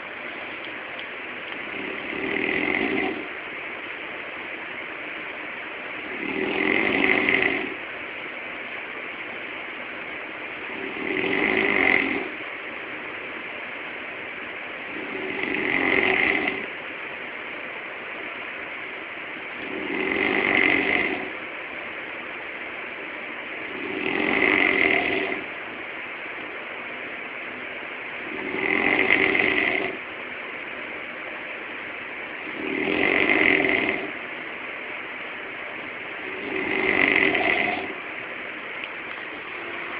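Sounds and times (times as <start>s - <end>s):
breathing hiss: 1.6s - 3.4s, 14.9s - 16.7s, 19.5s - 21.4s, 23.6s - 25.6s, 32.4s - 34.2s, 36.2s - 38.0s
man snoring loudly: 1.6s - 3.4s, 6.0s - 7.8s, 10.7s - 12.4s, 14.9s - 16.7s, 19.6s - 21.4s, 23.6s - 25.5s, 28.2s - 30.0s, 32.4s - 34.2s, 36.2s - 38.0s.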